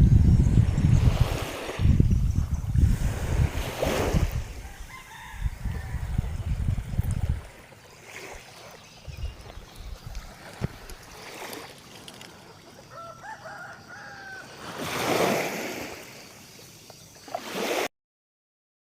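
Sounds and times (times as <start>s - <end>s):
rooster crowing: 4.6s - 6.3s, 12.8s - 14.7s.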